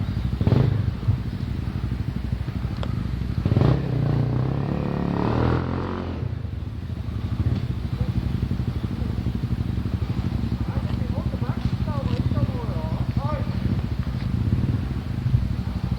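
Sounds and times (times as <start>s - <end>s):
motorbike engine puttering: 7.1s - 15.9s.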